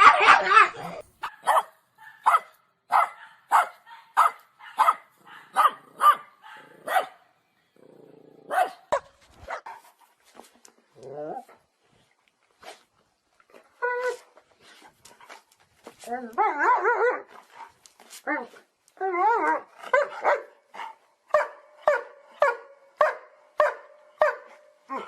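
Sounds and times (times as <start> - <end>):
dog barking: 1.2 - 7.2, 8.5 - 9.7, 19.9 - 20.5, 21.3 - 24.6.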